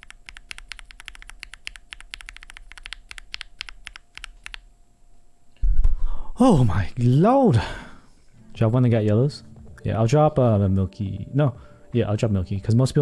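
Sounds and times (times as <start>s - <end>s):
fast mechanical keyboard typing: 0.0s - 4.7s.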